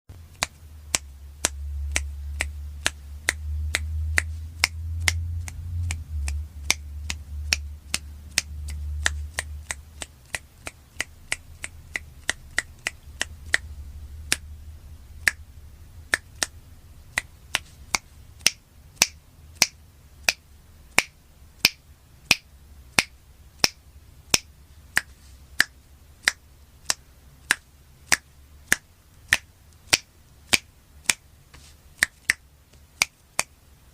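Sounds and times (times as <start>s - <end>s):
low rumble: 0.1s - 10.0s, 11.8s - 17.5s
fingers snapping: 0.3s - 13.7s, 16.1s - 20.4s, 23.0s - 31.2s, 32.0s - 33.5s.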